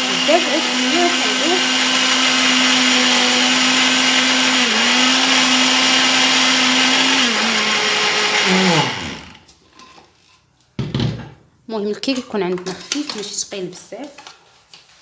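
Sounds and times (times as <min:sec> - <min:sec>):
electric mixer running: 0:00.0 - 0:09.5.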